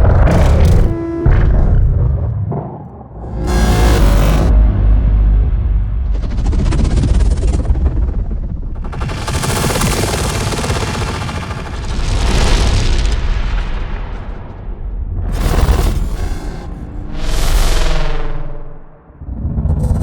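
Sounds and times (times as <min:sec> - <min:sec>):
deep low rumble: 0:00.0 - 0:09.6, 0:12.0 - 0:20.0
cinematic horror whooshes: 0:00.0 - 0:20.0.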